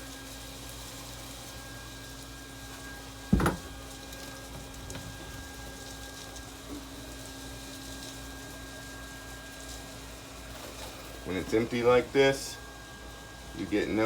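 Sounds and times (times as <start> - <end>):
insulation blower hum and hiss: 0.0 - 14.0
short thump: 3.3 - 5.6.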